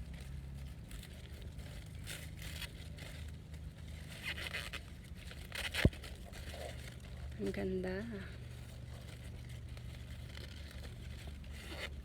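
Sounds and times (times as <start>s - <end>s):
corn husk rustling and tearing: 8.8s - 12.0s.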